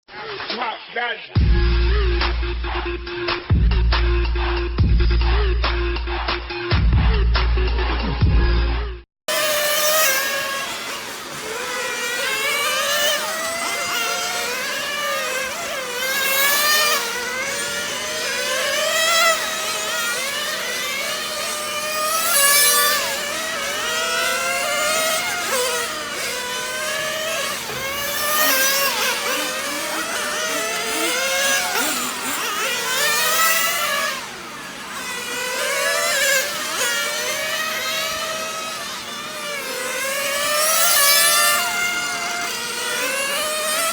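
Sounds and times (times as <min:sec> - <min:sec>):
model car engines revving: 0:09.3 - 0:43.9.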